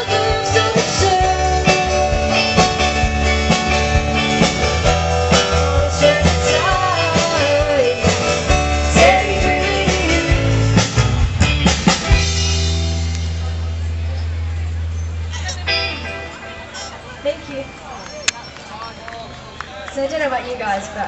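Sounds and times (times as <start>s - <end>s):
person singing: 0.0s - 3.0s, 5.3s - 10.9s
drums: 0.0s - 16.2s
rock music: 0.0s - 16.9s
guitars: 0.0s - 17.5s.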